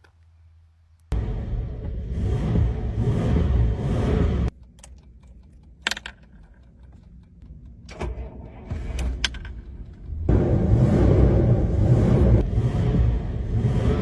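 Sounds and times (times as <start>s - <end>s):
car engine rumbling: 0.3s - 14.0s
light clicks and rattles: 4.6s - 8.0s.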